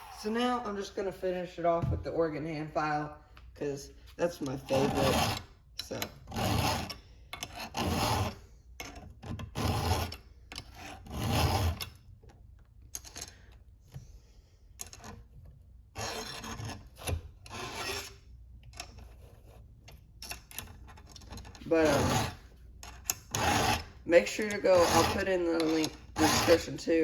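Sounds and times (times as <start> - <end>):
file rasping on chainsaw chain: 4.3 - 8.5, 9.4 - 12.0, 16.0 - 18.2, 21.5 - 27.0.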